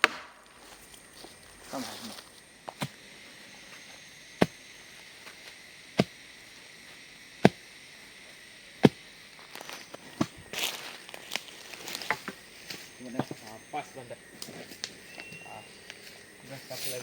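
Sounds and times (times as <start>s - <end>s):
sharp chopping strikes: 0.0s - 0.5s, 2.7s - 3.0s, 4.4s - 4.6s, 6.0s - 6.2s, 7.4s - 7.7s, 8.8s - 9.0s
rustling: 9.4s - 13.4s.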